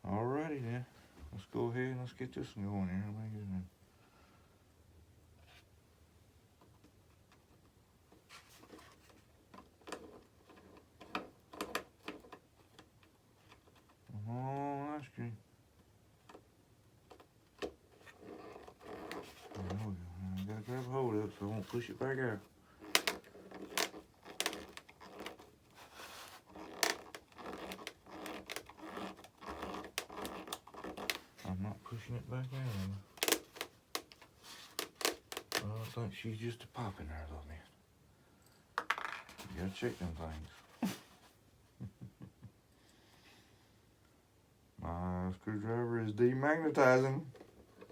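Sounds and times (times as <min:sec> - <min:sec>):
screwdriver turning screw into plastic: 0:22.8 - 0:25.6, 0:26.2 - 0:31.3.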